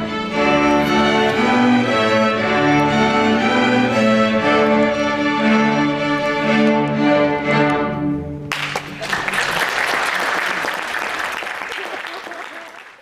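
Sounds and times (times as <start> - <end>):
orchestral strings playing chords: 0.0 - 9.0.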